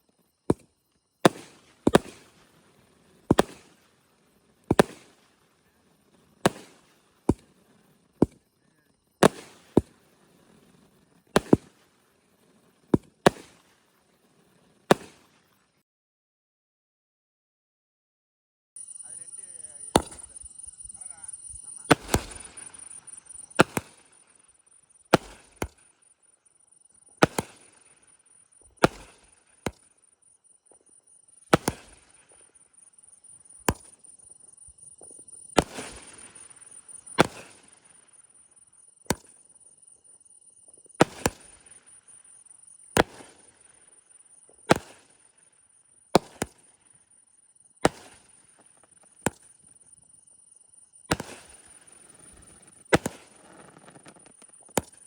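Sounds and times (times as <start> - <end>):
firework bangs: 0.5 - 8.4, 9.2 - 15.3, 19.4 - 24.3, 25.1 - 25.9, 27.1 - 29.8, 31.5 - 32.5, 35.0 - 38.3, 40.9 - 42.2, 42.9 - 45.2, 46.2 - 47.0, 47.8 - 49.9, 51.0 - 55.0
firework crackling: 1.2 - 8.4, 9.2 - 12.3, 19.0 - 25.8, 27.1 - 29.8, 31.5 - 32.4, 35.2 - 38.2, 47.8 - 50.0, 51.1 - 55.0.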